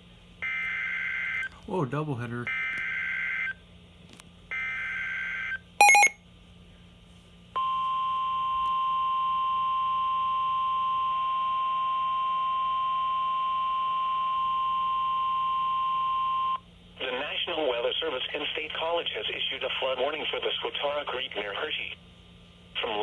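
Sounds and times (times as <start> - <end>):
steady warning alarm tone: 4.6 - 6.1
two-tone digital data buzz: 5.8 - 6.2.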